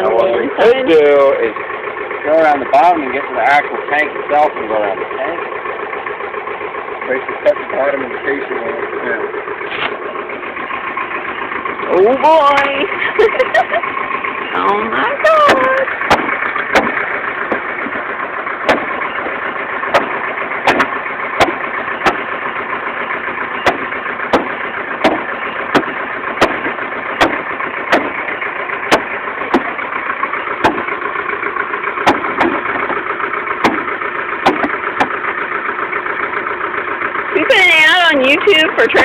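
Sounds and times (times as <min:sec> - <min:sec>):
engine idling: 0:00.0 - 0:39.0
sharp knocks: 0:15.5 - 0:18.0, 0:18.6 - 0:22.3, 0:23.6 - 0:28.2, 0:28.9 - 0:29.8, 0:30.6 - 0:30.9, 0:32.0 - 0:33.0, 0:33.6 - 0:35.2.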